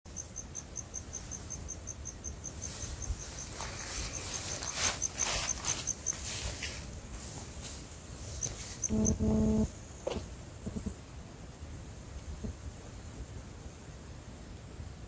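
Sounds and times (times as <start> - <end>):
cricket chirping: 0.1 - 6.5, 8.2 - 11.0
rustling hissing noise: 0.2 - 15.0.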